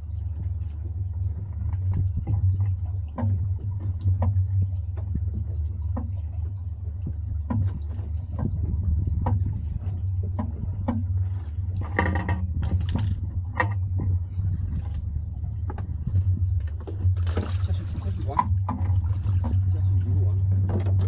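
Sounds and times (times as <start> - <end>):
boat engine droning: 0.0 - 21.0
knocks and clicks: 1.6 - 9.6, 10.2 - 11.2, 11.8 - 14.2.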